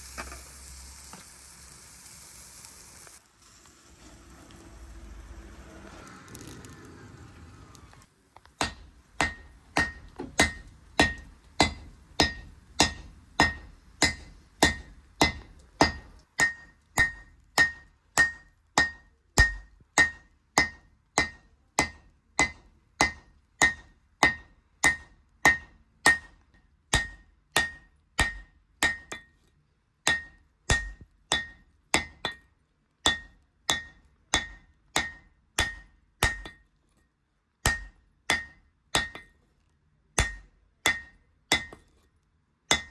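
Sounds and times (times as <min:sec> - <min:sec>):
hammer ringing on steel: 0:08.6 - 0:26.3, 0:40.2 - 0:41.8.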